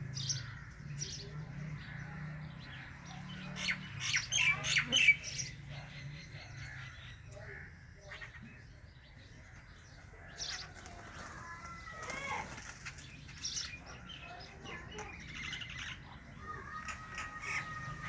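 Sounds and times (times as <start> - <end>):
sparrows chirping: 0.0 - 18.0
wings flapping: 10.6 - 13.2.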